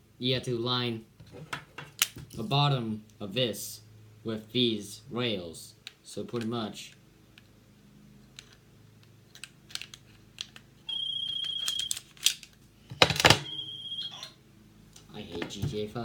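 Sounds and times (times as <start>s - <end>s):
pistol parts clicking: 8.2s - 10.7s, 11.3s - 13.4s
high electronic beep: 10.9s - 11.9s, 13.4s - 14.4s.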